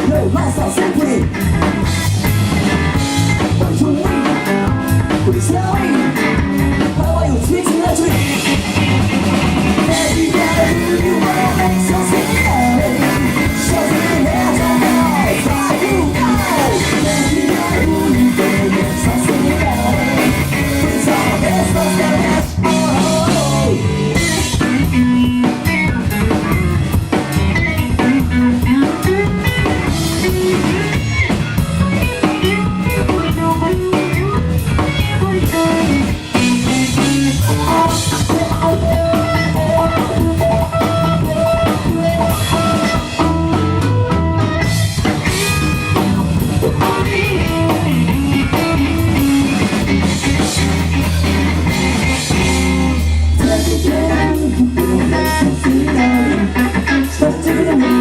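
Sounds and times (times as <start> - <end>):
bass guitar: 0.0 - 58.0
drum kit: 0.0 - 58.0
electric guitar: 0.0 - 58.0
person singing: 3.4 - 6.2, 6.8 - 8.8, 9.8 - 25.6, 33.0 - 43.3, 46.6 - 49.8, 53.3 - 58.0.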